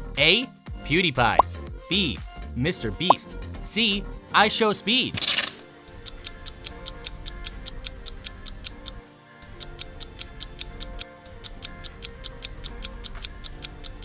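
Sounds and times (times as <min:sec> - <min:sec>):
quiet music bed: 0:05.7 - 0:14.0
rapid clock ticks: 0:06.0 - 0:09.0, 0:09.6 - 0:14.0.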